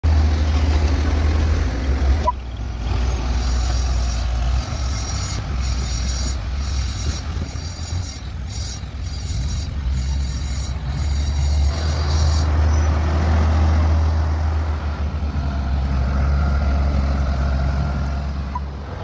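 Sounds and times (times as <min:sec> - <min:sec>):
diesel engine rumbling: 0:00.0 - 0:19.0.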